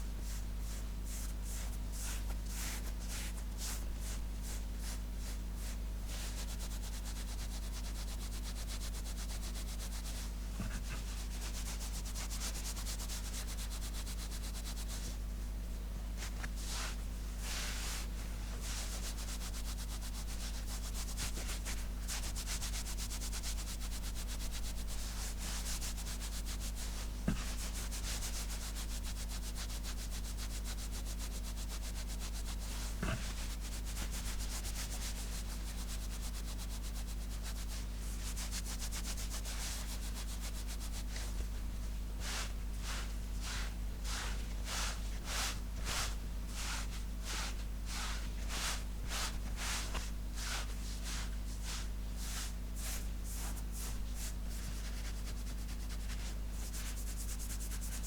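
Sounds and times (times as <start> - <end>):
steady low hum: 0.0 - 15.4, 30.3 - 58.0.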